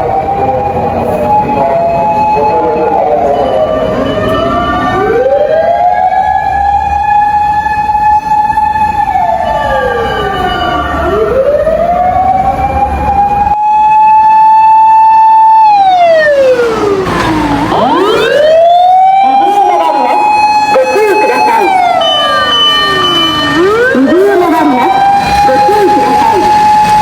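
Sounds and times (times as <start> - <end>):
mechanical motor siren wailing: 13.2 - 27.0.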